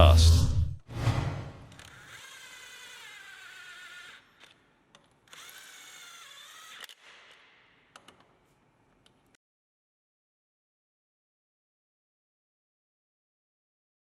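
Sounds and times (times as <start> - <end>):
impact wrench motor whirring: 1.7 - 8.0.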